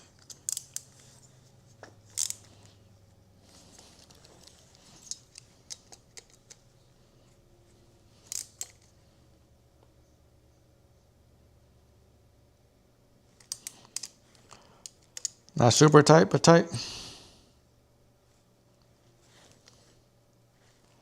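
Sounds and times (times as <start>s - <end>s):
hex key scraping: 0.0s - 2.8s.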